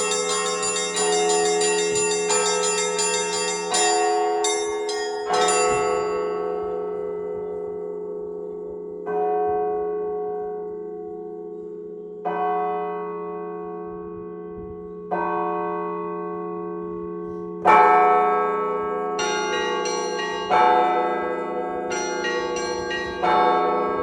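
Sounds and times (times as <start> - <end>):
single church bell ringing: 0.0 - 11.8, 17.7 - 24.0
set of church bells ringing: 0.0 - 24.0.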